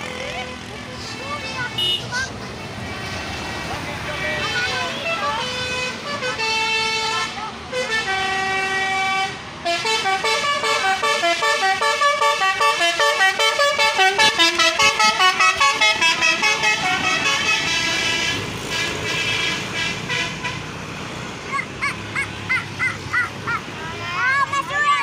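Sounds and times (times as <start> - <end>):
bus engine noise: 0.0 - 25.0
bus air horn tune: 1.8 - 2.1, 4.3 - 20.8.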